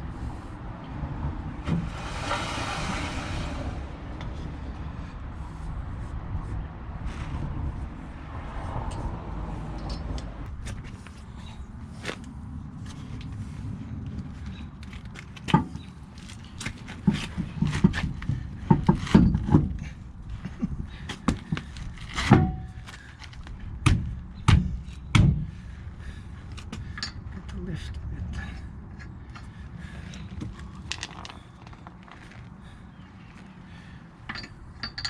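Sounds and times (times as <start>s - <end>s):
low rumble: 0.0s - 10.7s.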